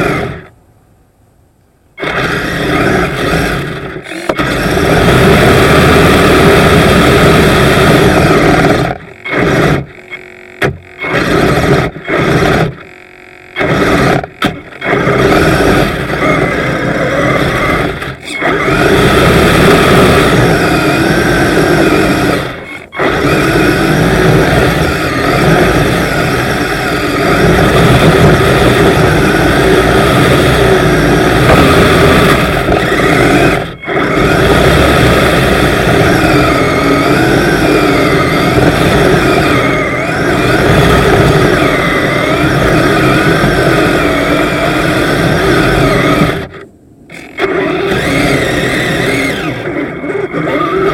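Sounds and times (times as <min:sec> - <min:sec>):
electric motors whining: 0:00.0 - 0:00.5, 0:02.0 - 0:50.9.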